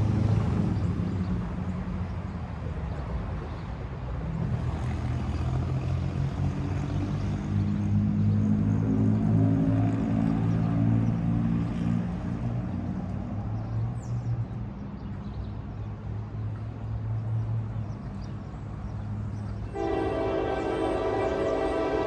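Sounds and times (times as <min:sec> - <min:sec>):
diesel locomotive droning: 0:19.5 - 0:22.0
train air horn: 0:19.7 - 0:22.0.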